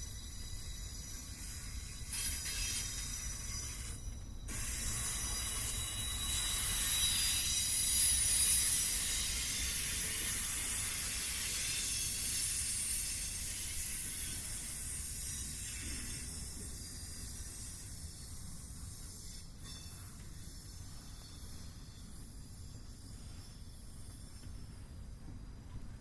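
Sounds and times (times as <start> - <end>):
train cars rolling on rails: 0.0 - 18.2.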